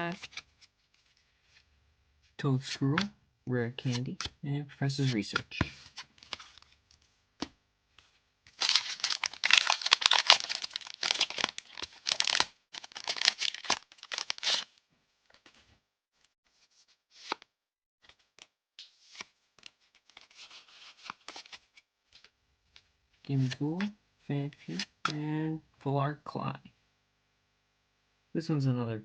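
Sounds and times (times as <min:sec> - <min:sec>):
foil wrapper tearing and crinkling: 0:08.5 - 0:14.7.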